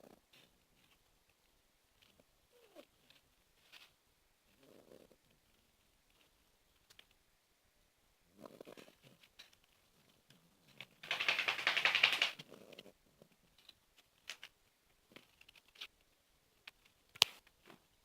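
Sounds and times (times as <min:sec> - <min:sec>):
puppy snoring: 0:04.6 - 0:05.2, 0:08.3 - 0:09.1
small clicks: 0:10.8 - 0:12.8.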